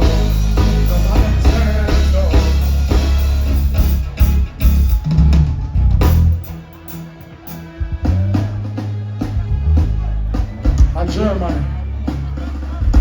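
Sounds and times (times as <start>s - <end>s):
drum kit hits: 0.0s - 6.9s
heavy bass: 0.0s - 13.0s.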